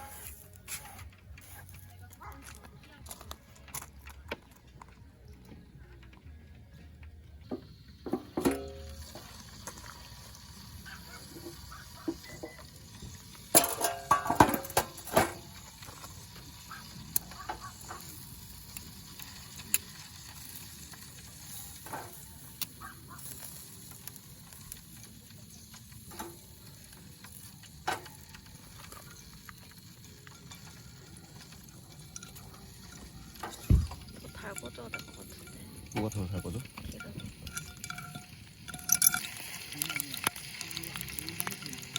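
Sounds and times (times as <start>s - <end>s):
food sizzling on a grill: 0.0s - 1.8s, 7.5s - 41.9s
clattering: 13.5s - 15.5s.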